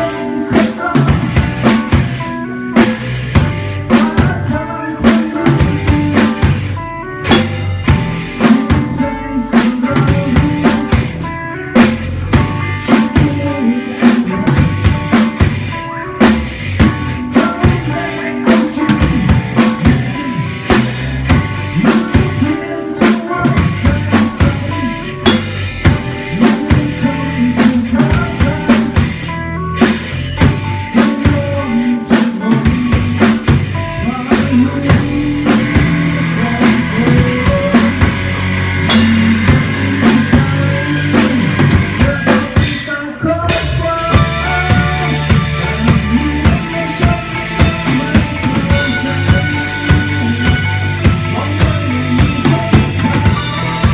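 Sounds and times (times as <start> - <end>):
rock band music: 0.0 - 53.9
bass drum and snare hits: 5.5 - 9.0, 25.2 - 27.0, 36.7 - 42.6.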